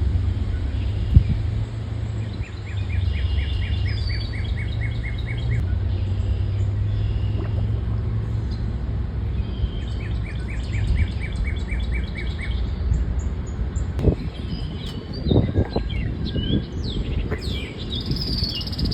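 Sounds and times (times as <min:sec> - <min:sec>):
birds whistling: 0:02.2 - 0:08.7, 0:09.3 - 0:18.9
bird chirping rapidly: 0:14.2 - 0:18.9.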